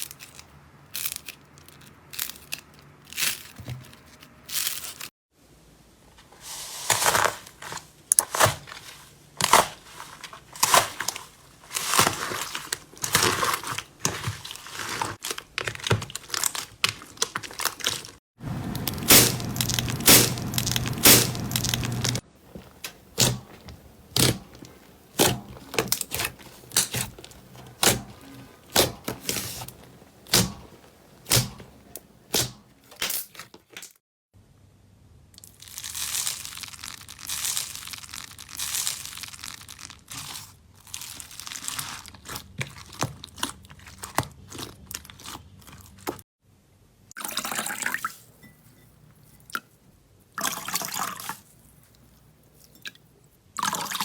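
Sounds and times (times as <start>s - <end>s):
slime crackling: 10.6s - 32.4s, 35.4s - 46.2s.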